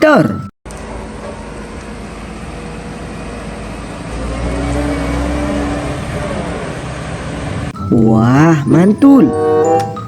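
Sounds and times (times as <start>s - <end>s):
vehicle engine revving: 3.8s - 7.7s.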